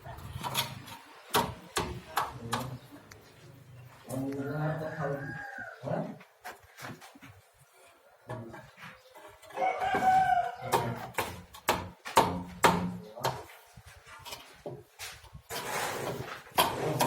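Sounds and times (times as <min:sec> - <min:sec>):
sharp knocks: 0:10.7 - 0:13.5.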